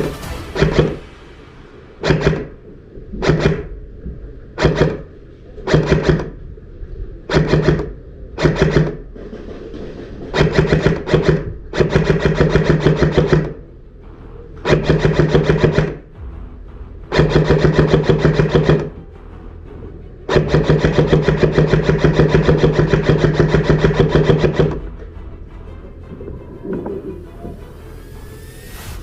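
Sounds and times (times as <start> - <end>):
airsoft gun full-auto bursts: 5.7 - 6.3, 7.3 - 9.0, 10.4 - 13.5, 14.7 - 16.0, 17.1 - 18.9, 20.3 - 24.8.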